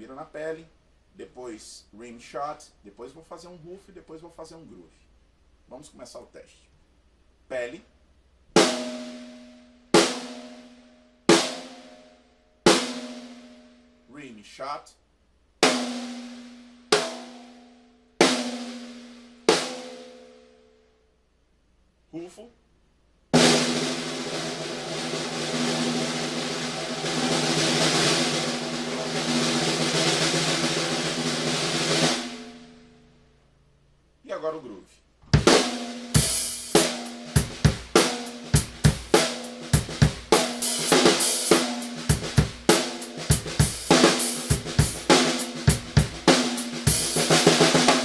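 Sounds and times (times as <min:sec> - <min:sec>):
snare drum roll: 0:23.4 - 0:32.7, 0:35.3 - 0:48.0.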